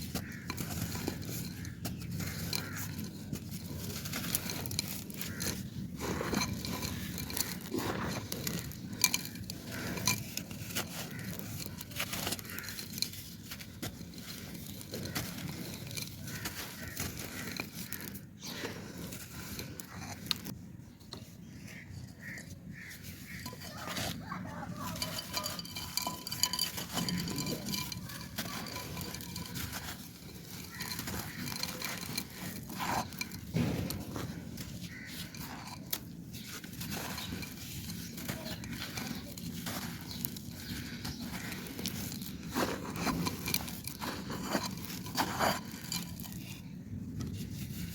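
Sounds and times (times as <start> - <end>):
clay pot being crushed: 0.0 - 20.6, 22.2 - 47.9.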